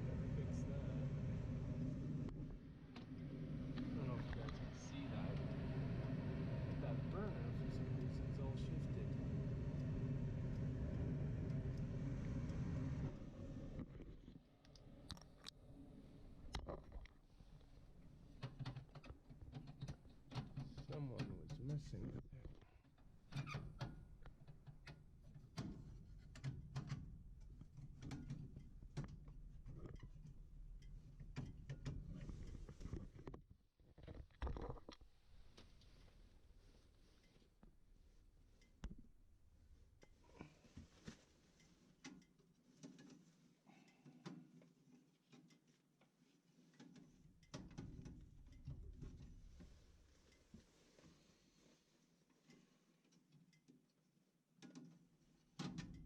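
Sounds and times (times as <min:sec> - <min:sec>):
steady low hum: 0:00.0 - 0:18.4
low rumble of handling: 0:00.0 - 0:41.6.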